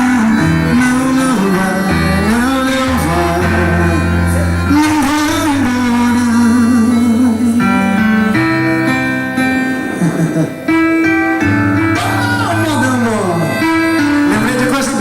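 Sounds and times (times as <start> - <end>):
person singing: 0.0 - 8.7
plucked guitar: 0.0 - 15.0
sustained bass line: 1.9 - 8.3.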